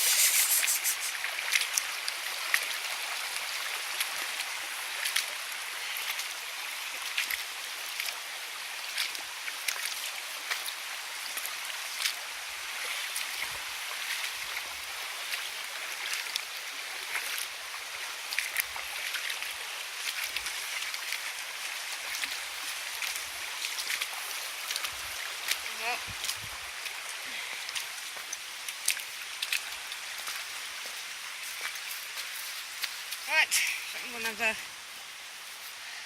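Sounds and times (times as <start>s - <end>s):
small sharp ticks: 0.0s - 1.2s
rushing river water: 0.0s - 36.0s.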